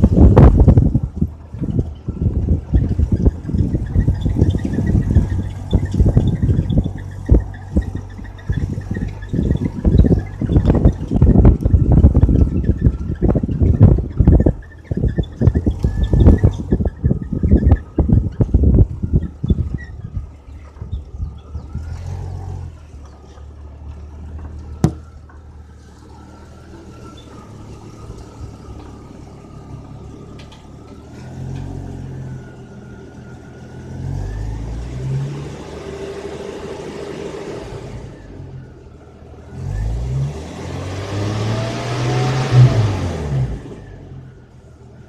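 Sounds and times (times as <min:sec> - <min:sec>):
car engine revving: 0:39.4 - 0:44.4.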